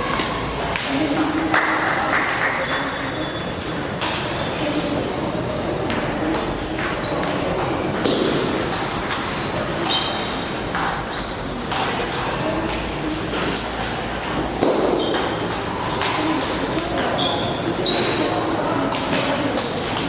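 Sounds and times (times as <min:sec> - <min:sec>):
background hubbub in hall: 0:00.0 - 0:20.0
short high squeaks: 0:08.6 - 0:13.3.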